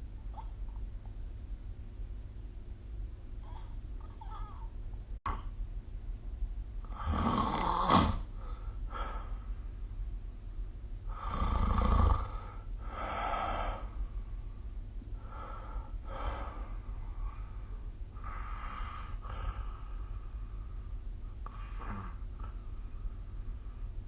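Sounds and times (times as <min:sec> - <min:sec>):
steady low hum: 0:00.0 - 0:24.0
person snoring: 0:06.9 - 0:08.3, 0:11.1 - 0:13.9, 0:21.5 - 0:22.2.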